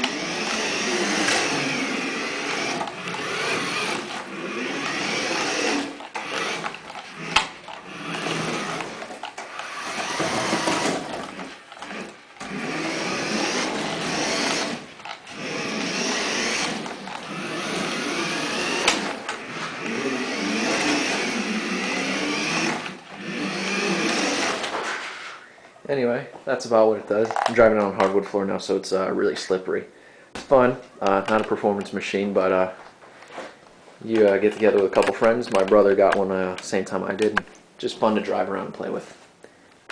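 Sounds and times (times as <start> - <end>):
toy car electric motor whining: 0.0 - 25.4.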